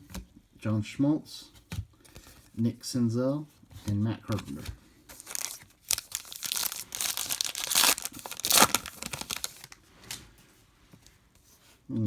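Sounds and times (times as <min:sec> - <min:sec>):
plastic wrapper tearing and crinkling: 0:05.1 - 0:09.8.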